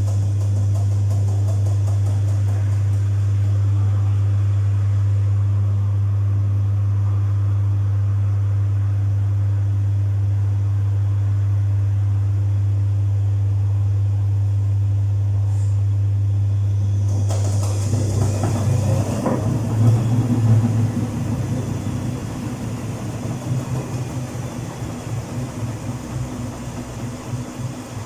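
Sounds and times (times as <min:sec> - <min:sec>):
washing machine humming: 0:00.0 - 0:28.0.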